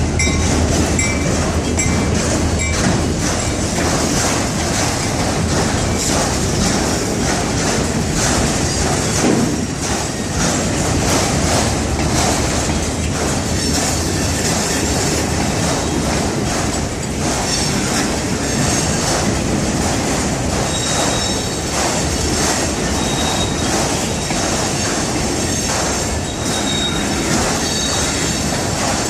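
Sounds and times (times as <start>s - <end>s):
freight train wheels rumbling on rail: 0.0s - 29.0s
clicks over rail joints: 0.2s - 29.0s
high wheel squeal: 20.7s - 21.6s, 23.0s - 24.9s, 25.5s - 28.6s.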